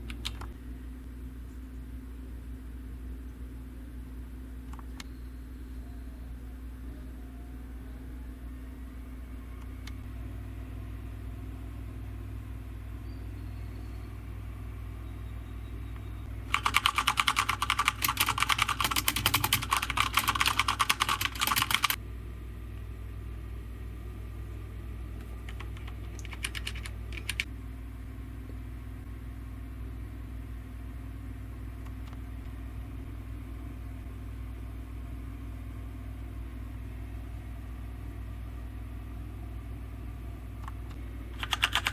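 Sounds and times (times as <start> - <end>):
mechanical keyboard typing: 0.0 - 0.5, 16.5 - 22.0, 25.4 - 27.5, 41.4 - 41.9
steady low hum: 0.0 - 41.9.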